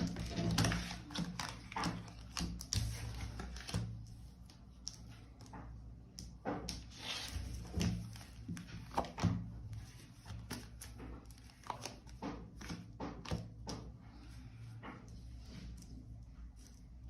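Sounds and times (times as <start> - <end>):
cards clicking and slapping on table: 0.0 - 4.0.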